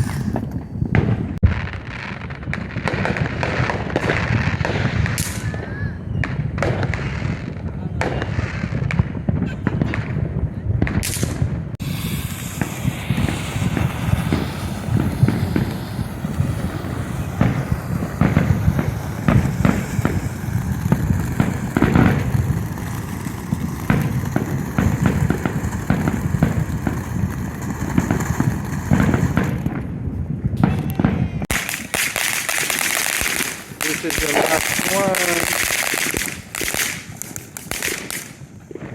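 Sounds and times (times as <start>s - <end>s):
fireworks popping and crackling: 0.0s - 38.9s
high hiss: 11.8s - 20.4s.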